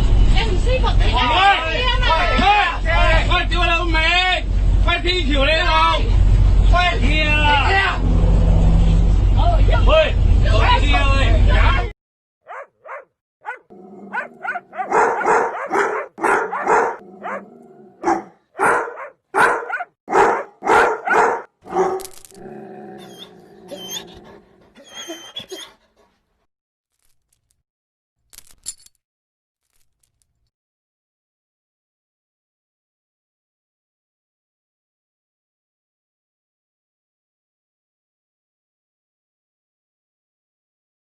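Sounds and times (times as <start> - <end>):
dog barking: 12.4 - 22.0
dog whimpering: 12.5 - 17.4, 23.0 - 26.1.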